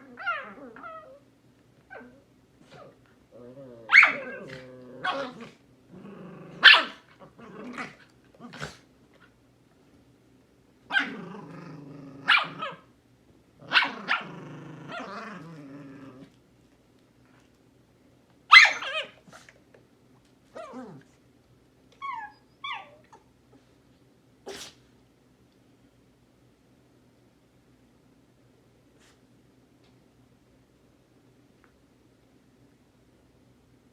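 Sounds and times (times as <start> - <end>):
dog whining: 0.0 - 1.3, 1.9 - 5.5, 21.9 - 23.3
dogs growling: 2.0 - 8.9, 11.0 - 12.8, 13.6 - 16.4
dog yipping: 3.9 - 4.3, 18.5 - 19.2, 22.0 - 23.2
dog barking: 18.5 - 19.1.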